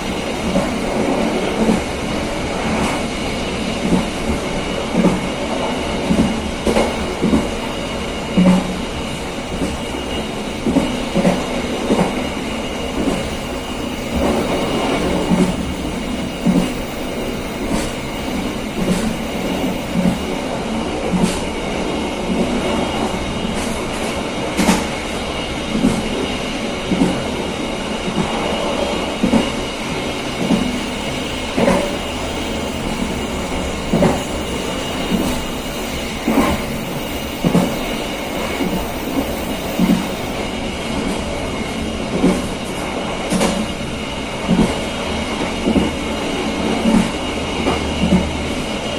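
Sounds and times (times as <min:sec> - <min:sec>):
train rumbling on track: 0:00.0 - 0:48.9.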